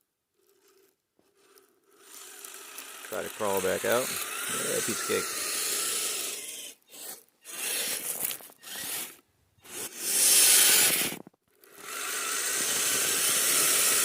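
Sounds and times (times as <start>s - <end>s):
rc crawler tracks grinding in snow: 0.3s - 14.0s.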